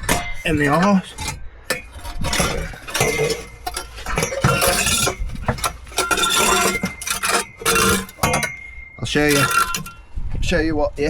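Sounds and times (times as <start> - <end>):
metal parts clanking: 0.0 - 10.2.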